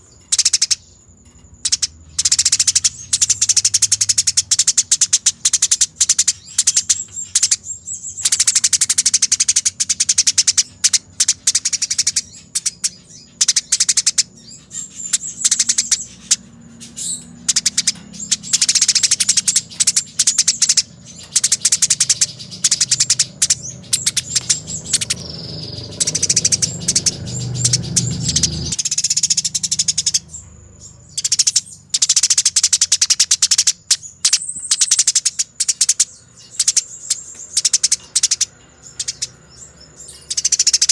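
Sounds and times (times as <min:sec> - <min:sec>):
sparrows chattering trills: 0:00.0 - 0:40.9
low background rumble: 0:01.6 - 0:33.0.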